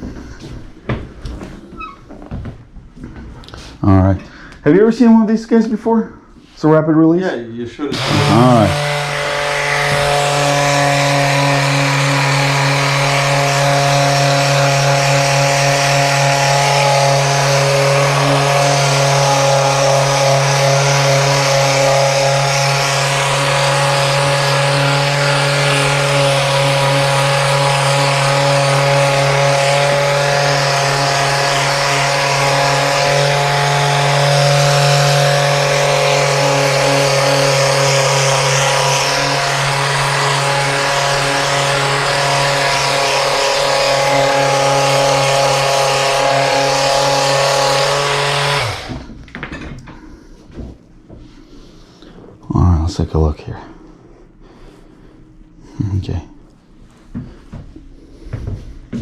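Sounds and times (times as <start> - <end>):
vibration device motor buzz: 7.9 - 49.2.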